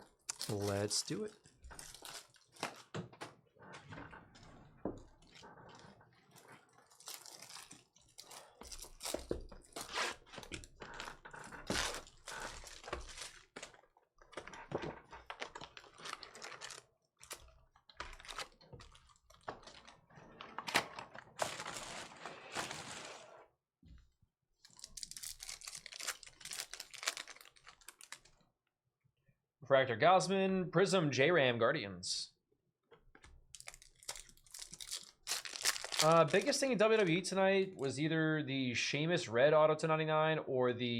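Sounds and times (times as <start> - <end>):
wrappers crinkling and tearing: 0.2 - 2.9, 5.2 - 13.8, 15.2 - 20.0, 21.3 - 23.4, 24.7 - 28.4, 33.5 - 37.1.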